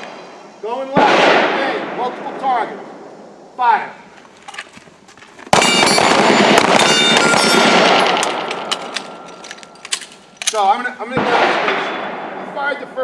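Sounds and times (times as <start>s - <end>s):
rapid handgun fire: 5.5s - 9.3s
thin ringing tone: 6.8s - 8.0s.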